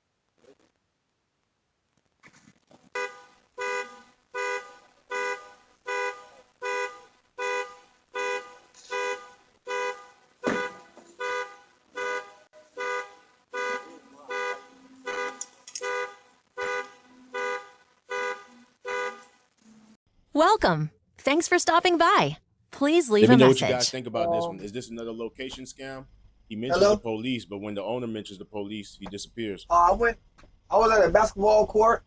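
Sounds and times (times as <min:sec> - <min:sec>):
car alarm honking: 0:03.0 - 0:19.4
thump: 0:10.4 - 0:11.2.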